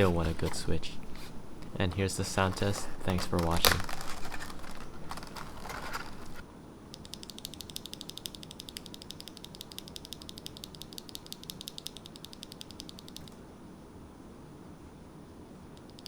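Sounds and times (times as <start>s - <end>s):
mechanical keyboard keys clicking: 2.3s - 6.4s, 7.0s - 13.4s.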